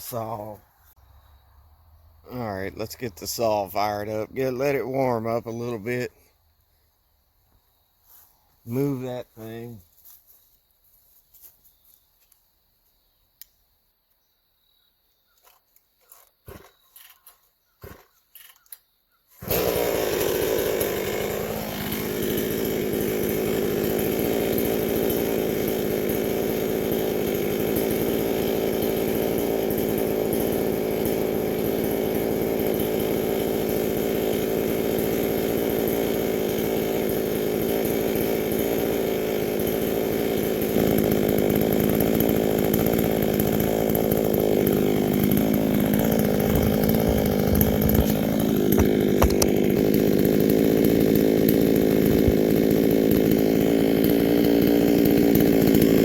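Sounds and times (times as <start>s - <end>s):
chainsaw cutting wood: 8.7s - 9.8s, 15.4s - 18.8s, 19.4s - 56.0s.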